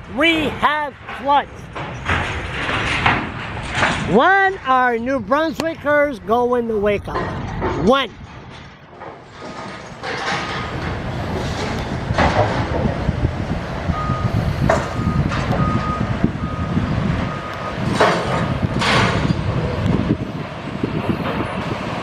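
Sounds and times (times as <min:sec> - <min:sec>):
diesel engine rumble: 0:00.0 - 0:22.0
reversing alarm beeping: 0:13.9 - 0:17.9.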